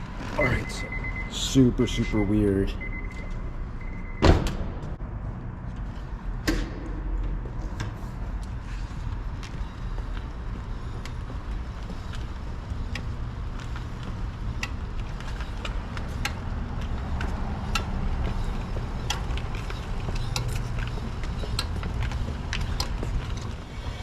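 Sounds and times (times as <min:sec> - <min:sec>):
car rolling rumble: 0:07.1 - 0:24.0.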